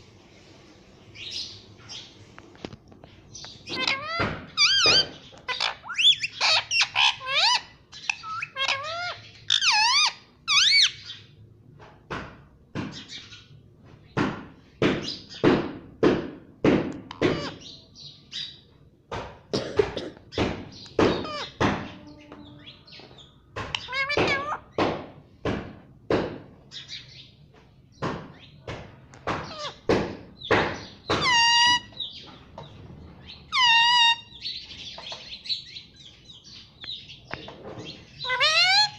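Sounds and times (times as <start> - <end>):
parrot squawks: 3.6 - 11.0, 17.2 - 17.7, 21.2 - 21.6, 23.8 - 24.6, 29.5 - 29.8, 31.2 - 32.0, 33.5 - 34.4, 38.2 - 38.9
parrot whistle calls: 31.2 - 32.0.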